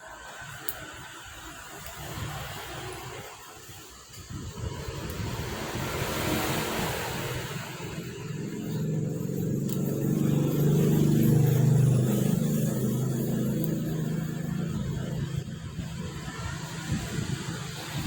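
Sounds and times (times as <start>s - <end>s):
vehicle engine passing by: 4.4s - 18.0s.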